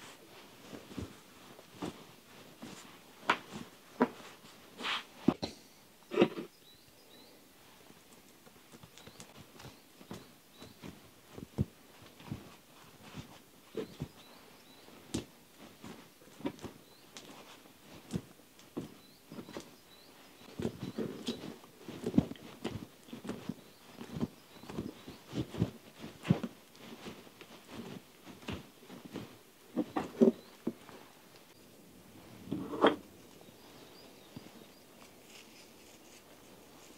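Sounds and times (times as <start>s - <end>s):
faint small bird chirps: 8.9s - 11.0s, 13.7s - 15.1s, 18.9s - 21.6s.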